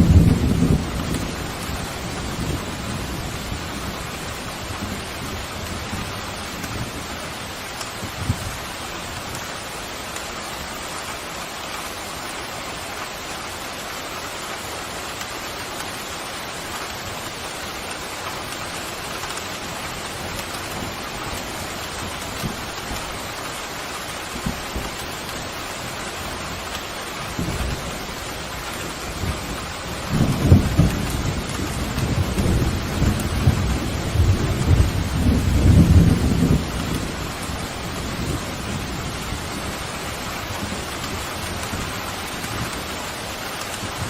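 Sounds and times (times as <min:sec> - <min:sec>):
thunder rumbling: 0:00.0 - 0:09.3, 0:24.4 - 0:44.0
pouring rain: 0:00.0 - 0:44.0.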